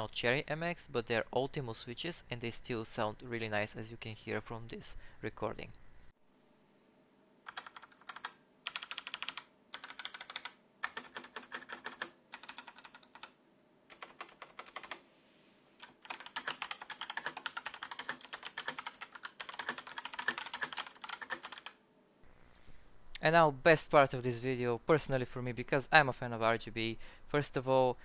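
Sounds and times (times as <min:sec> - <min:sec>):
mechanical keyboard typing: 0:07.5 - 0:15.0, 0:15.8 - 0:21.8.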